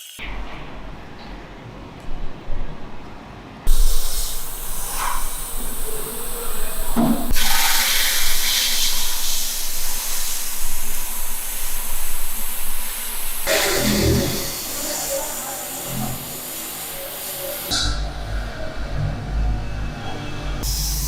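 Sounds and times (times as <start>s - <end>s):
clattery workshop noise: 0.0s - 21.0s
loud spraying hiss: 3.7s - 17.8s, 20.6s - 21.0s.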